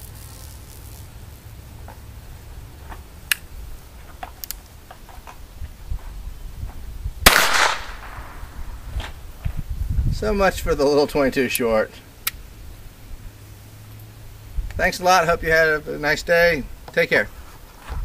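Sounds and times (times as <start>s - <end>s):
small-calibre pistol shot: 7.2s - 8.5s.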